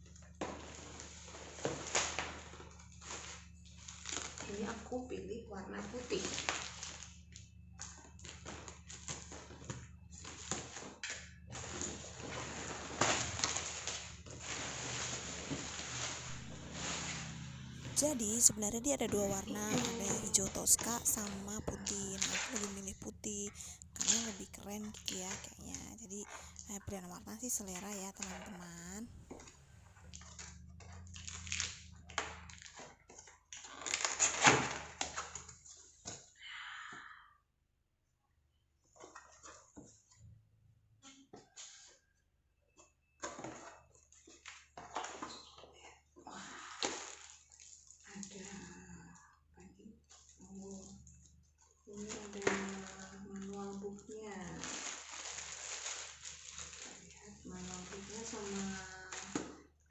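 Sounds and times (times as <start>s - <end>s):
packaging crackling and rustling: 0.2s - 4.6s, 6.0s - 17.5s, 29.3s - 36.0s, 50.1s - 59.7s.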